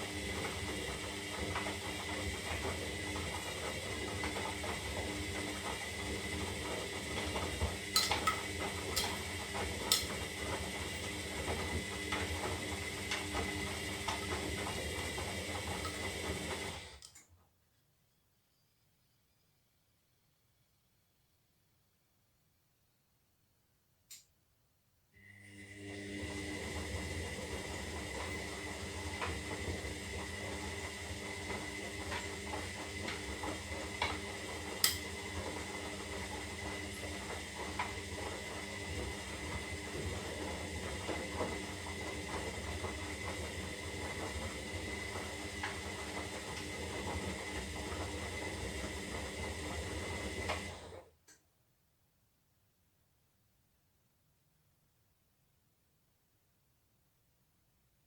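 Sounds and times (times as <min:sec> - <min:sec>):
washing machine motor humming: 0:00.0 - 0:17.0, 0:25.2 - 0:51.1.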